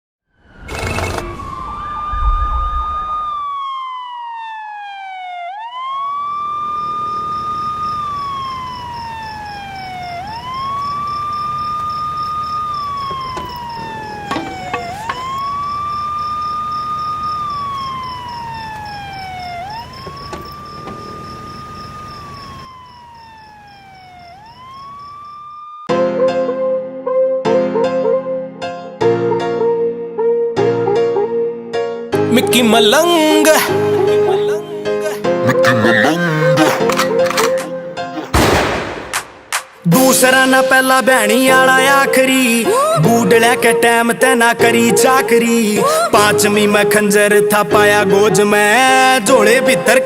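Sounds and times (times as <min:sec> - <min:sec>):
siren wailing: 0:00.3 - 0:25.9, 0:33.3 - 0:38.6.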